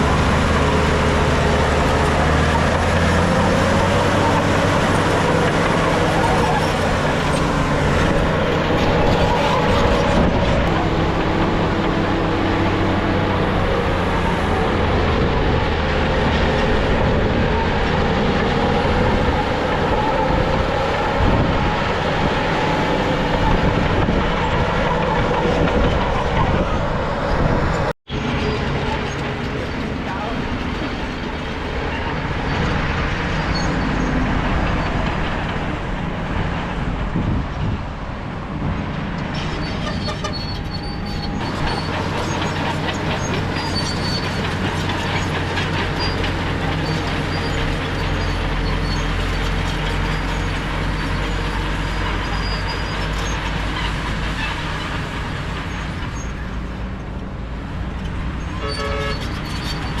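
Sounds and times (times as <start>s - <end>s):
bulldozer diesel engine: 0.0s - 60.0s
steel tracks rattling: 0.0s - 60.0s.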